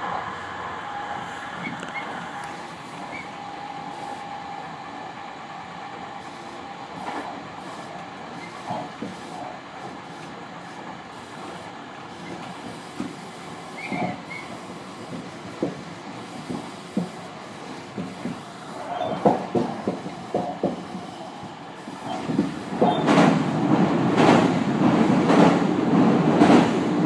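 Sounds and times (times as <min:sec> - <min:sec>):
electric train running: 0:00.0 - 0:27.0
wheels knocking: 0:13.8 - 0:25.7.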